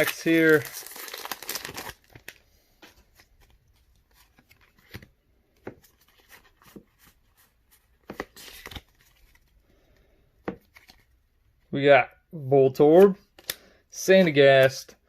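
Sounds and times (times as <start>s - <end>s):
foil wrapper rustling: 0.0s - 2.4s.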